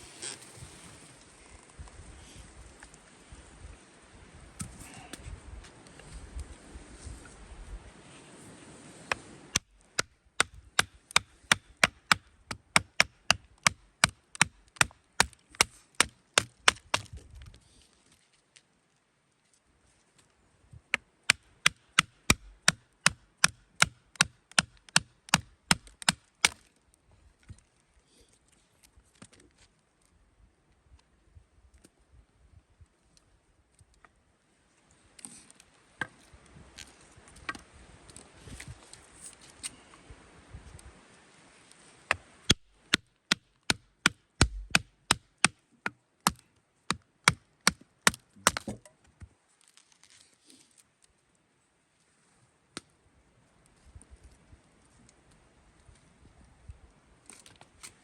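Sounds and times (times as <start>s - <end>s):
wood being chopped: 9.1s - 17.2s, 20.9s - 26.7s, 42.1s - 48.9s.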